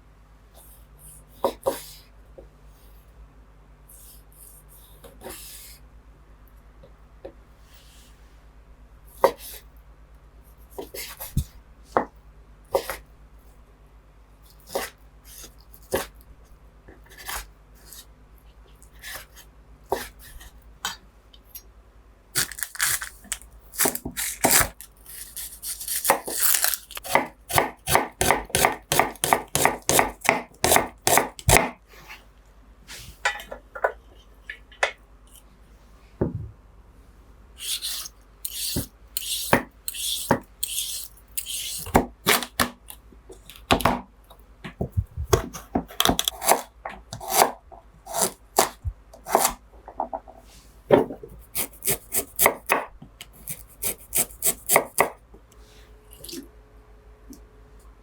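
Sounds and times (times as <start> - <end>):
knife chopping on cutting board: 27.0 - 31.8, 45.2 - 49.6, 50.9 - 52.9, 53.5 - 55.2
knife scraping board: 37.6 - 42.4.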